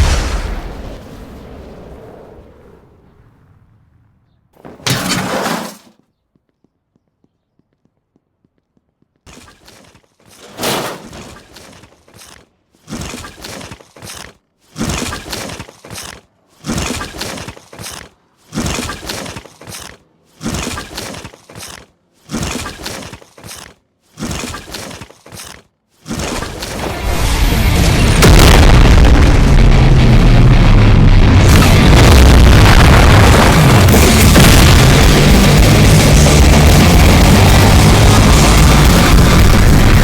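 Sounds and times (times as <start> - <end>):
sharp crashing bursts: 4.6 - 6.0, 9.3 - 40.0
sustained bass-heavy blast: 27.0 - 40.0.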